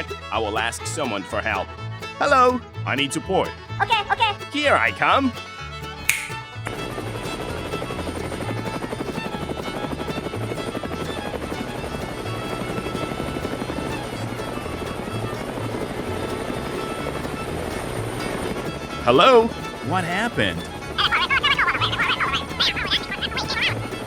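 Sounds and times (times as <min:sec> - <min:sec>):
helicopter rotor chopping: 0:06.1 - 0:24.0.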